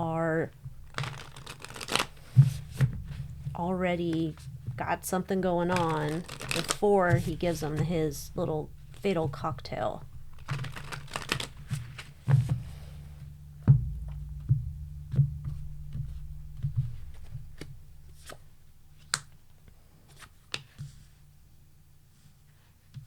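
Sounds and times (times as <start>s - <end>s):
low steady hum: 0.0s - 23.0s.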